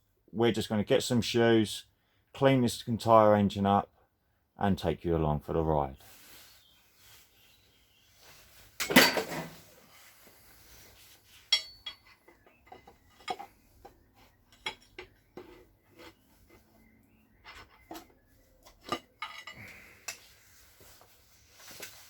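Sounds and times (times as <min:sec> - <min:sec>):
metal engine parts clinking: 0:11.5 - 0:13.6, 0:14.5 - 0:15.1, 0:18.7 - 0:20.2.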